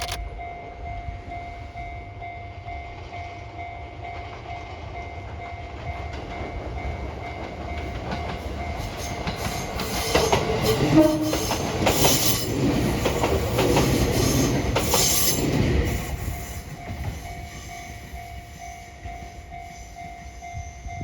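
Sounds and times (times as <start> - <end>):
electric train rumble: 0.0 - 21.0
wheels clacking over rail joints: 5.9 - 15.9.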